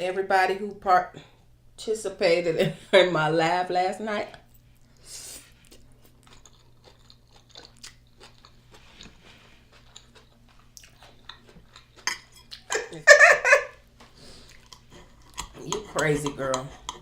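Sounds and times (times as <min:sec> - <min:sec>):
close-miked chewing: 0:05.6 - 0:13.0, 0:14.0 - 0:17.0.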